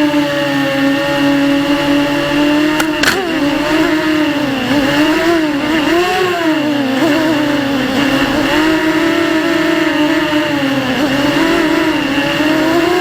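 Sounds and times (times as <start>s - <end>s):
quadcopter motors whining: 0.0s - 13.0s
sharp clicks: 2.7s - 3.7s.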